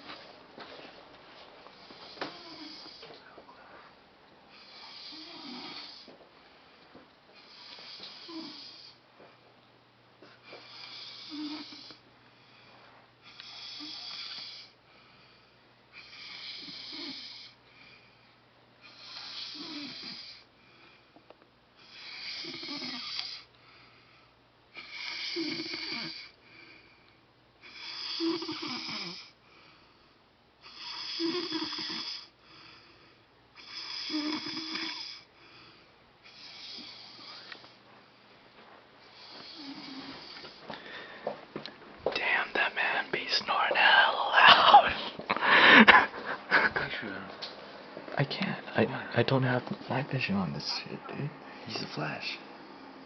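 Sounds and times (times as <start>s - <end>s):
man snoring loudly: 1.9s - 3.0s, 4.5s - 6.1s, 7.4s - 9.0s, 10.6s - 12.0s, 13.3s - 14.7s, 16.0s - 17.6s, 18.8s - 20.5s, 21.8s - 23.5s, 24.8s - 26.3s, 27.6s - 29.3s, 30.7s - 32.3s, 33.6s - 35.3s, 36.3s - 37.4s, 39.1s - 40.6s.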